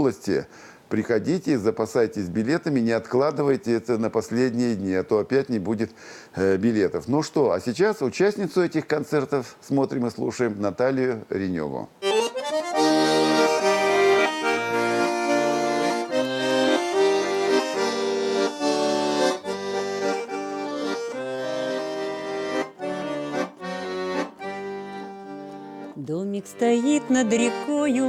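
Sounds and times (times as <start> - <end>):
accordion folk melody: 12.0 - 28.0.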